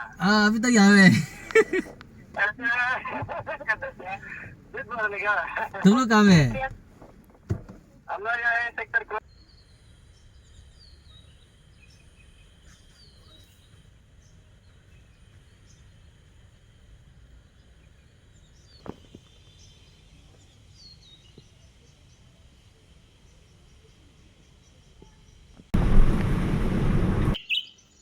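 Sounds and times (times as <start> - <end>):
faint low hum: 7.5 - 27.4
small birds chirping: 8.6 - 28.0.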